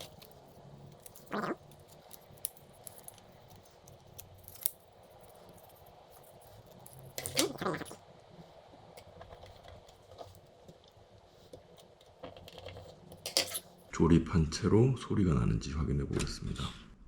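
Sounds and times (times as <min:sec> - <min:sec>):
scraping of laptop parts: 0:00.0 - 0:07.9, 0:09.0 - 0:13.9.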